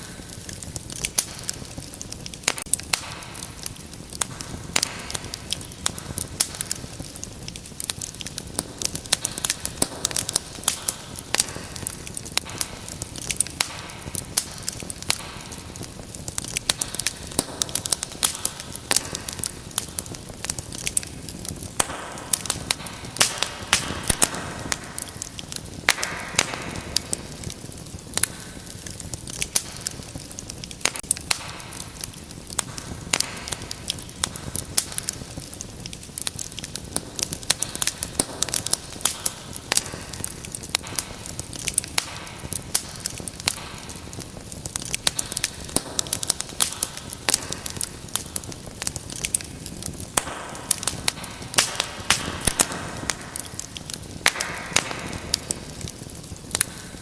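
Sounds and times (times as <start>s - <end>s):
wood fire crackling and popping: 0.0s - 57.0s.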